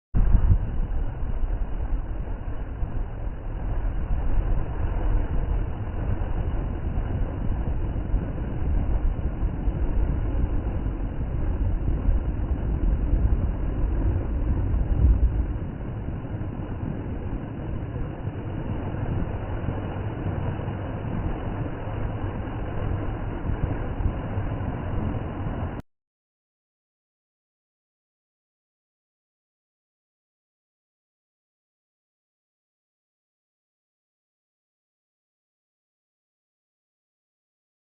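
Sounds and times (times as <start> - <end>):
floodwater rushing with deep rumble: 0.2 - 25.8.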